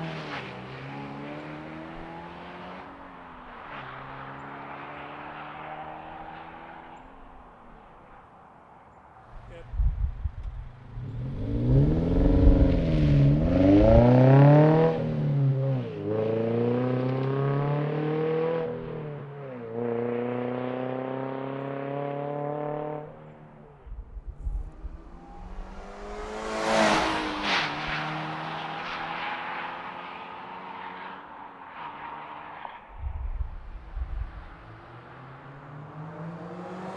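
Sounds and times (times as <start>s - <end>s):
car engine revving: 10.4s - 23.1s, 23.8s - 31.0s, 33.0s - 36.9s.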